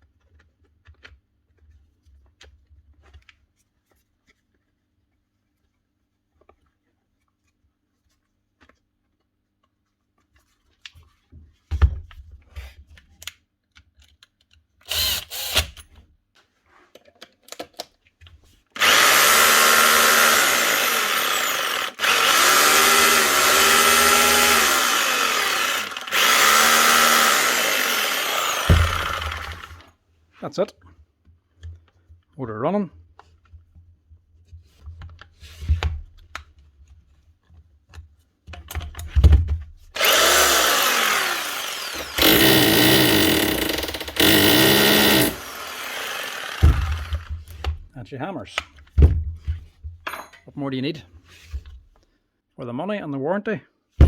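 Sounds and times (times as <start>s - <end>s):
drill motor running: 14.9s - 15.8s, 18.8s - 29.9s, 40.0s - 47.3s.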